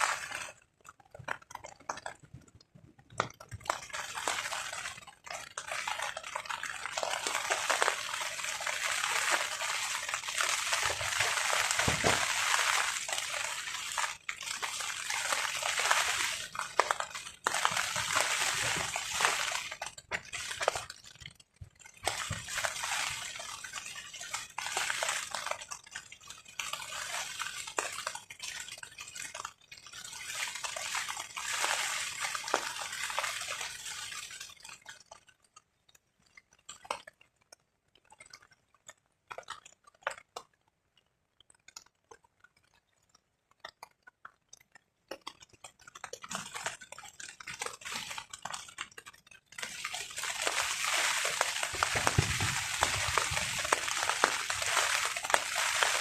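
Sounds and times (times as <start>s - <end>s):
wind-driven rain hissing: 0.0s - 0.4s, 7.0s - 19.8s, 50.1s - 56.0s
drops pattering on a tarp: 5.8s - 20.9s, 30.5s - 34.0s, 49.6s - 56.0s.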